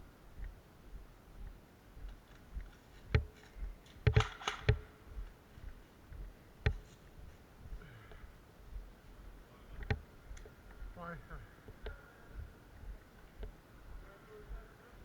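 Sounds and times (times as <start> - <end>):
airsoft guns firing: 3.2 - 5.1.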